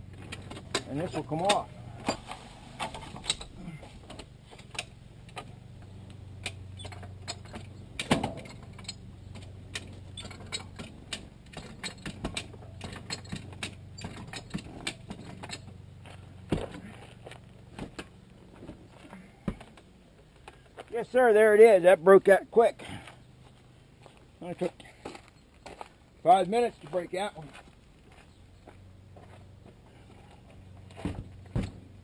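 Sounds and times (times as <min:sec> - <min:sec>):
steady low hum: 0:00.0 - 0:21.2.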